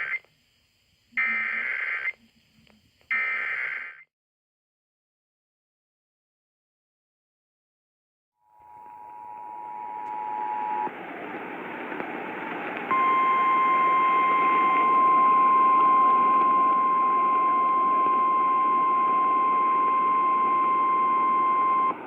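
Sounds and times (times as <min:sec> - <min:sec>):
radio static hiss: 0:00.0 - 0:04.0, 0:09.1 - 0:22.0
steady alarm tone: 0:12.9 - 0:21.9.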